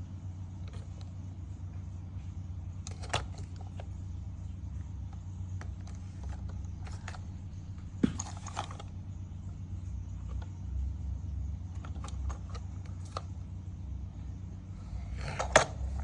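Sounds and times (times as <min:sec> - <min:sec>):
steady low hum: 0:00.0 - 0:16.0
plastic parts clicking and rattling: 0:05.6 - 0:07.2, 0:08.0 - 0:08.9.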